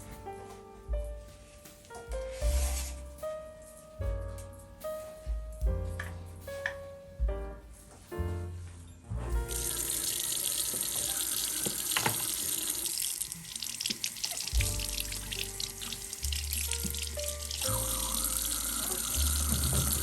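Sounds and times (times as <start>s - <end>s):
soft background music: 0.0s - 20.0s
tap water running into sink: 9.5s - 20.0s.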